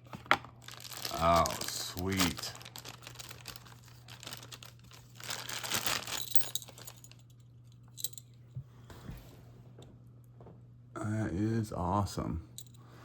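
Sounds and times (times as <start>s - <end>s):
plastic packaging crinkling: 0.2s - 7.3s.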